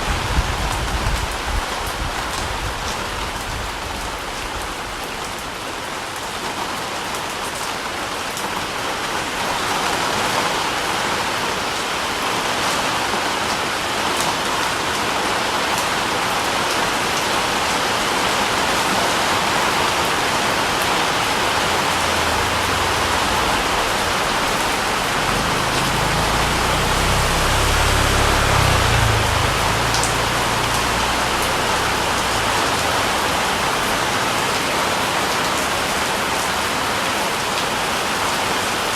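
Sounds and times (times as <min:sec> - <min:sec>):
steady rain falling: 0:00.0 - 0:38.9
low rumble: 0:21.4 - 0:33.9.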